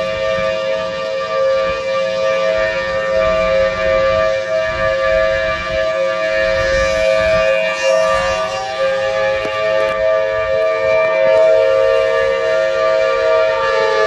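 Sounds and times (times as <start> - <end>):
warning siren steady tone: 0.0 - 14.0.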